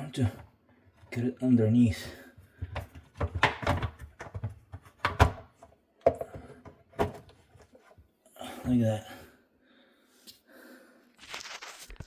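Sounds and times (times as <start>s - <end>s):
plastic parts knocking and clattering: 2.5s - 7.8s.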